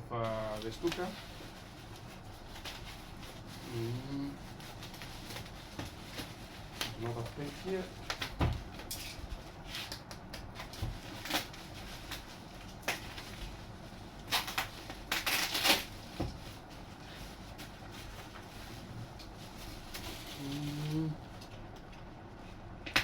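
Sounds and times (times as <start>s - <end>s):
packing tape ripping: 9.7s - 13.5s, 14.2s - 16.3s, 19.8s - 21.6s.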